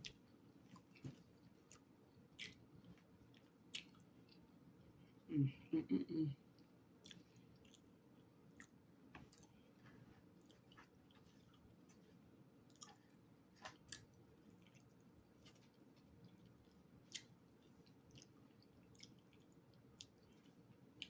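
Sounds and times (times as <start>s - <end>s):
mouth clicks and crunches: 0.0s - 4.4s
chewing food: 0.0s - 4.6s, 6.5s - 21.0s.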